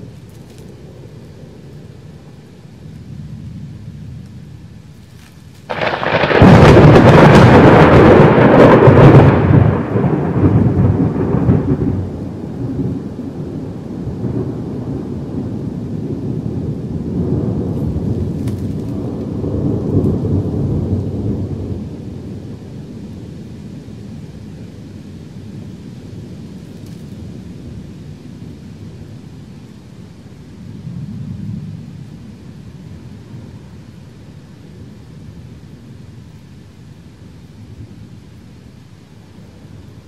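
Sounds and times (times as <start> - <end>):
distant thunder rumble: 0.0 - 4.9, 5.6 - 40.0
close thunderclap: 5.6 - 23.3.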